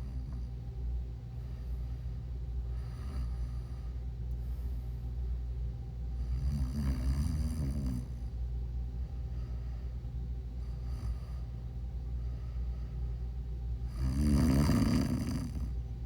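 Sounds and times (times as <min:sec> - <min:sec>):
steady low rumble: 0:00.0 - 0:16.0
person snoring: 0:06.3 - 0:08.2, 0:13.9 - 0:15.8.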